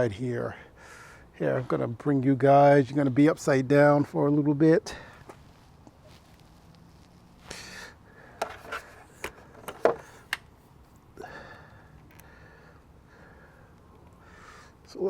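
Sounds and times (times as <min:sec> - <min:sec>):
person breathing out heavily: 0:00.7 - 0:01.3, 0:07.4 - 0:08.4, 0:11.2 - 0:14.8
handling clicks and knocks: 0:08.4 - 0:10.5.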